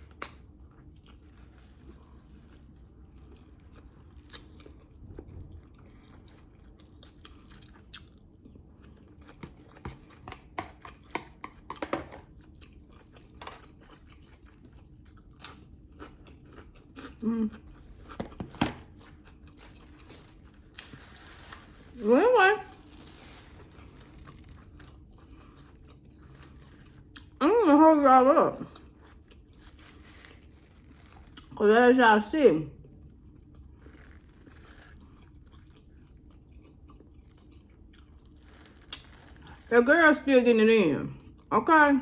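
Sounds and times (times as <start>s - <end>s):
food crunching: 0.0s - 22.0s, 22.6s - 27.4s, 28.6s - 31.6s, 32.8s - 39.7s
person chewing with mouth clicks: 3.2s - 11.7s, 12.4s - 20.9s, 24.0s - 27.4s, 33.3s - 39.6s.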